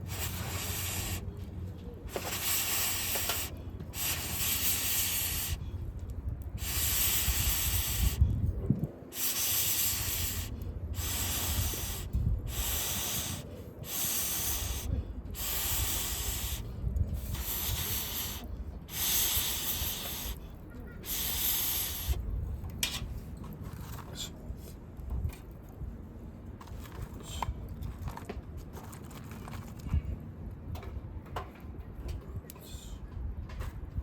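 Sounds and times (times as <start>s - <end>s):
air blown in hissing puffs: 0.0s - 22.2s.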